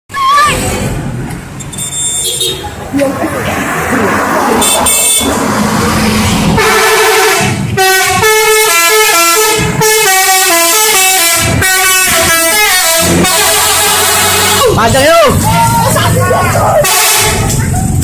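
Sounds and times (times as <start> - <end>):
musical bus air horn tune: 6.6 - 14.8, 16.7 - 17.6.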